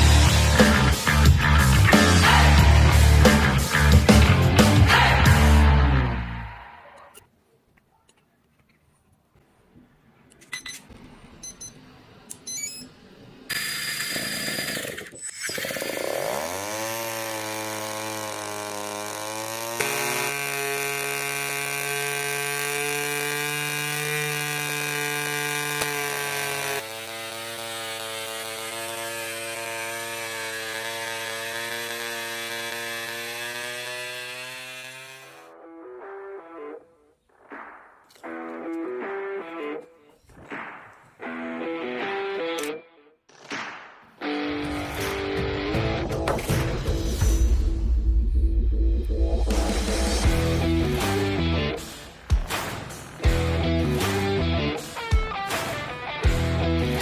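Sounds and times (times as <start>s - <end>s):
small electric motor whine: 13.4s - 35.5s.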